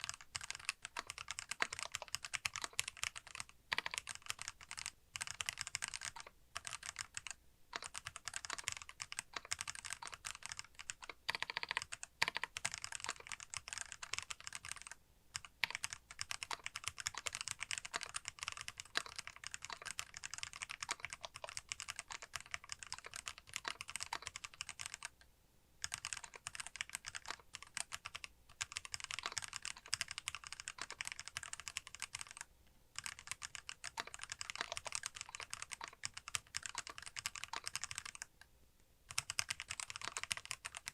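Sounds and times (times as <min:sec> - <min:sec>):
typing on mechanical keyboard: 0:00.0 - 0:25.2, 0:25.8 - 0:38.4, 0:39.1 - 0:40.9.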